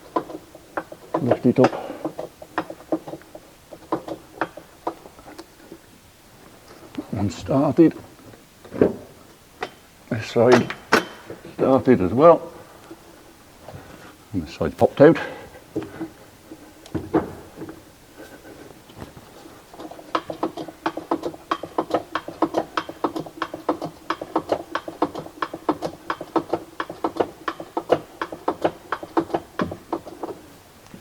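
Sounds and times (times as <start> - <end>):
rapid mechanical clicking: 0.0 - 5.9, 18.4 - 31.0
faint steady hum: 0.0 - 31.0.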